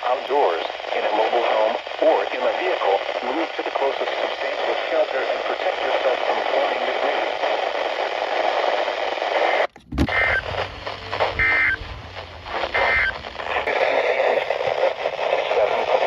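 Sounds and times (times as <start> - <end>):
radio hiss: 0.0 - 16.0
high digital data tones: 10.1 - 10.6, 11.2 - 11.9, 12.7 - 13.3.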